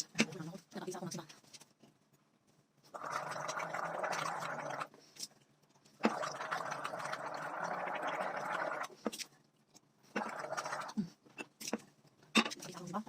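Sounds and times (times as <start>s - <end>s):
person gargling water: 3.0s - 4.9s, 6.0s - 8.9s, 10.1s - 11.2s.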